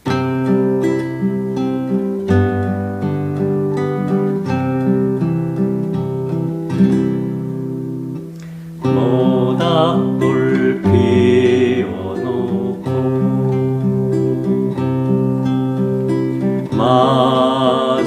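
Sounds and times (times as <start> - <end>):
acoustic guitar strumming chords: 0.0 - 18.0
wavering melody: 8.8 - 18.0.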